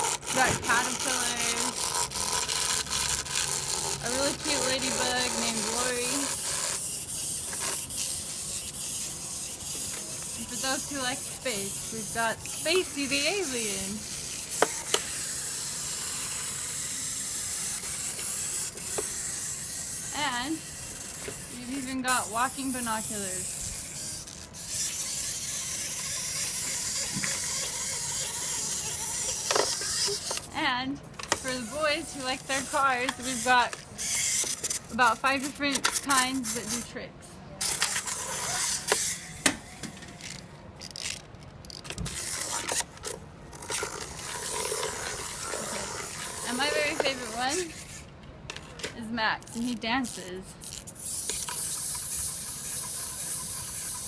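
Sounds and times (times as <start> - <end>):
wind-up toy cars whirring: 0.0 - 30.6, 31.2 - 37.0, 37.6 - 54.0.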